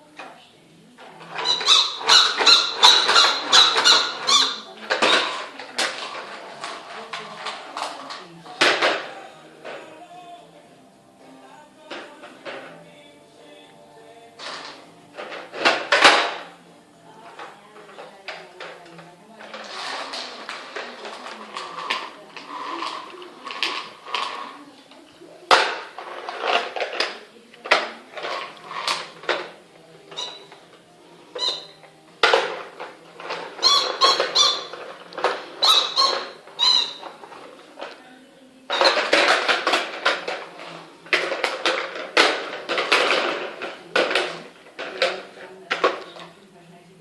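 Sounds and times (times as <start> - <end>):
rubber squeaky toy squeaks: 1.3 - 5.3, 30.2 - 30.5, 31.4 - 31.8, 33.6 - 37.2, 38.7 - 39.2.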